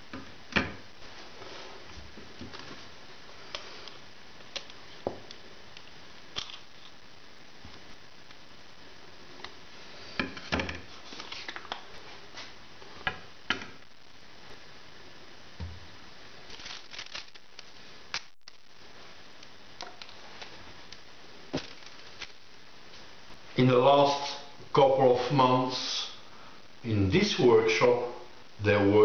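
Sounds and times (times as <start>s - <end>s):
faint steady hiss: 0.0s - 29.0s
small objects knocking and clattering: 16.5s - 18.6s, 21.5s - 22.4s.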